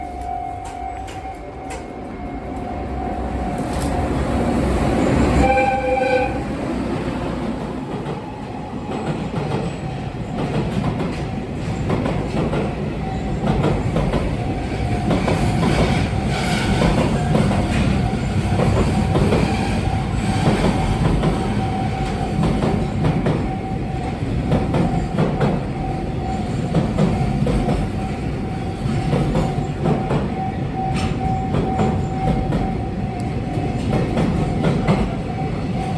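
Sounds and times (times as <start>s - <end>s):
train horn: 5.3s - 6.8s
train wheels clattering: 7.5s - 35.9s.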